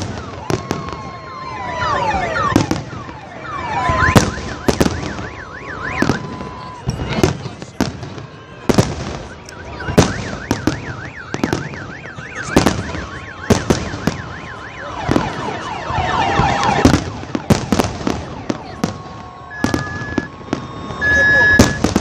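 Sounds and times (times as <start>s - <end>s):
fireworks crackle: 0.0s - 22.0s
warbling siren-like wail: 0.0s - 22.0s.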